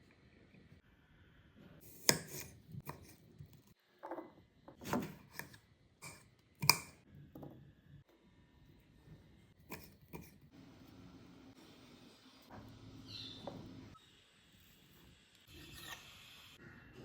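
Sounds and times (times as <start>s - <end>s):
knife chopping vegetables: 1.8s - 3.3s, 4.8s - 7.0s, 9.6s - 10.4s.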